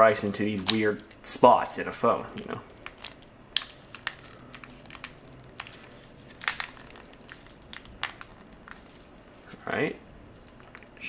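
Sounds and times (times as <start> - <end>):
plastic parts clicking: 2.4 - 9.0.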